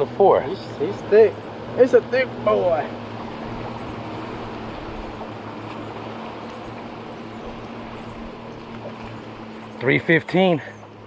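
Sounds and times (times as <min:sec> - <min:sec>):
boat motor humming: 0:00.0 - 0:11.0.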